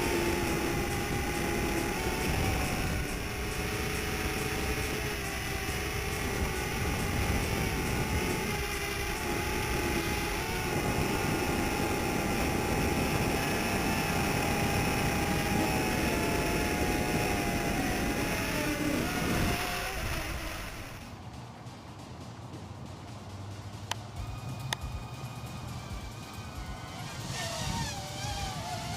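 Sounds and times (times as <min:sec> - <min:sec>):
quadcopter motors whining: 0:00.0 - 0:21.2, 0:24.2 - 0:28.9
wind rumble on microphone: 0:00.0 - 0:21.2.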